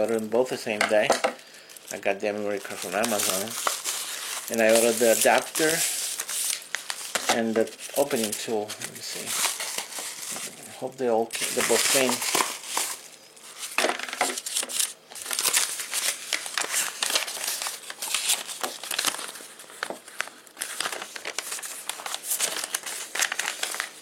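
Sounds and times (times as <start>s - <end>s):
packaging crinkling: 0.0s - 24.0s.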